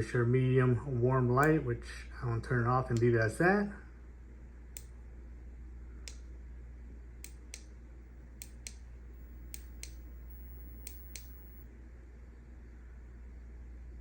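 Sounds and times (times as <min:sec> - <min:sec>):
low hum: 0:04.7 - 0:11.7
flashlight button clicks: 0:08.4 - 0:11.6.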